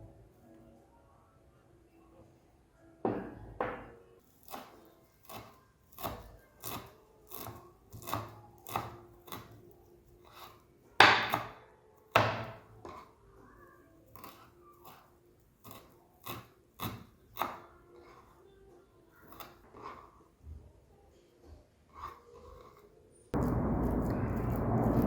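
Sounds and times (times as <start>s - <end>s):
knife chopping on wooden board: 4.4s - 9.6s, 10.3s - 13.0s.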